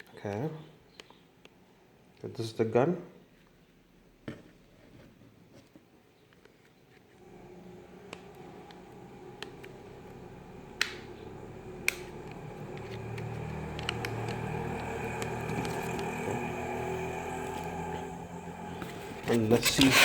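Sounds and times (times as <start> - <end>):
low mechanical hum: 7.2 - 20.0
sharp clicks: 11.8 - 16.2.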